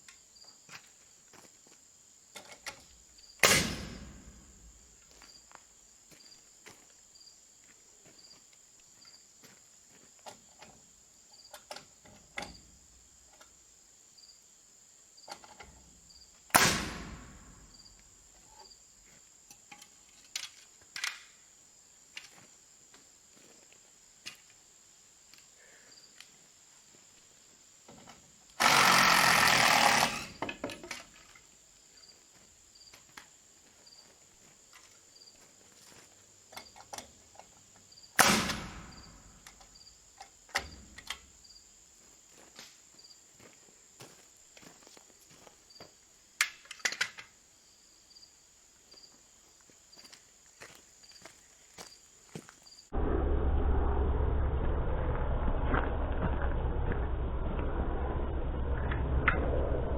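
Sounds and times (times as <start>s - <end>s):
crickets chirping: 0.0s - 53.0s
loud burst of noise: 52.9s - 59.9s.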